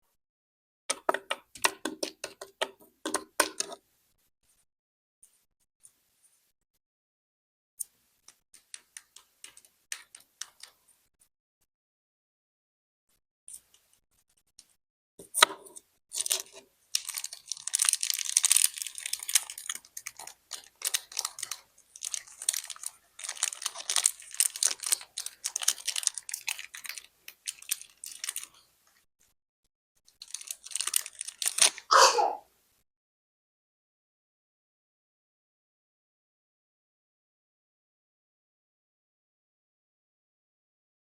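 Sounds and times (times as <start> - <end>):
plastic wrappers crinkling and tearing: 16.1 - 29.0, 30.1 - 31.9.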